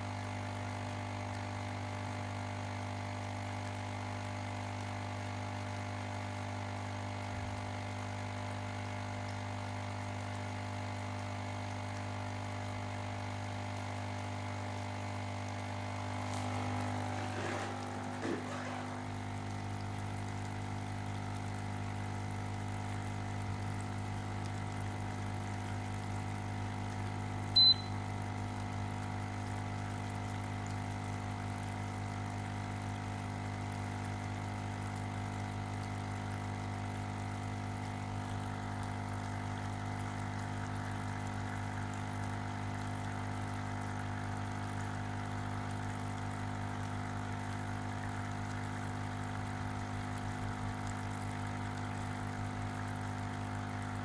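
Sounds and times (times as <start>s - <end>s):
electrical hum and buzz: 14.2s - 25.4s.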